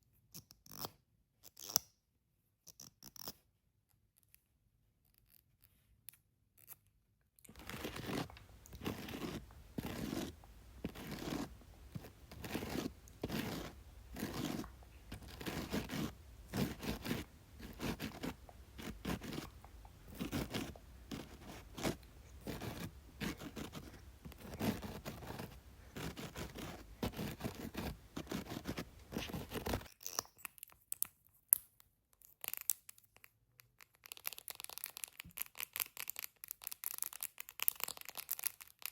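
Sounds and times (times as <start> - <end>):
scratchy crunching makeup strokes: 7.5 - 29.9.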